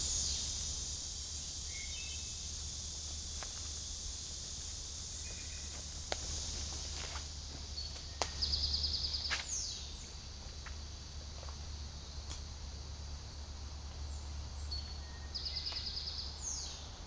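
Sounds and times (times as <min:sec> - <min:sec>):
high insect hiss: 0:00.0 - 0:17.0.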